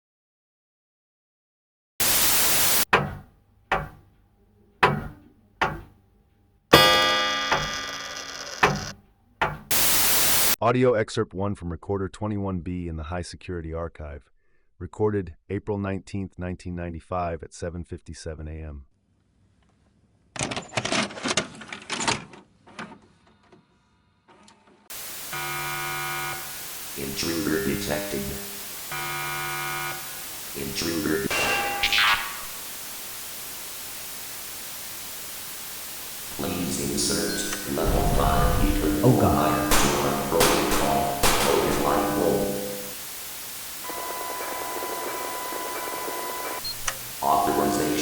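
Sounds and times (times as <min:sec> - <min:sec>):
hiss: 0:02.0 - 0:02.9, 0:09.7 - 0:10.6, 0:24.9 - 0:29.0, 0:30.0 - 0:43.9
loud static burst: 0:02.0 - 0:02.9, 0:06.8 - 0:08.9, 0:09.7 - 0:10.6, 0:24.9 - 0:48.0
heavy thunks: 0:02.9 - 0:04.1, 0:04.8 - 0:06.0
loud buzzing tone: 0:06.7 - 0:09.0, 0:09.6 - 0:10.6, 0:24.9 - 0:48.0
clattering and rustling: 0:20.4 - 0:23.6
electronic alert tone: 0:25.3 - 0:32.6.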